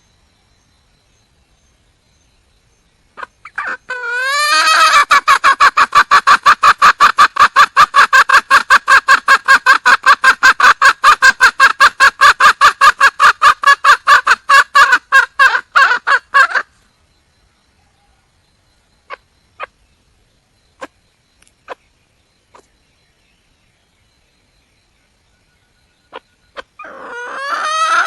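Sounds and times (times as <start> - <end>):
hen calling: 3.2 - 16.8, 19.0 - 19.8, 20.7 - 22.8, 26.0 - 28.0.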